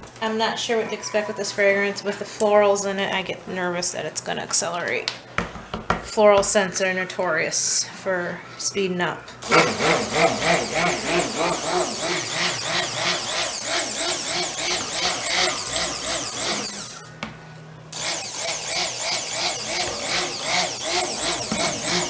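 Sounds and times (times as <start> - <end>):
stick blender whirring: 9.4 - 17.2, 17.9 - 22.0.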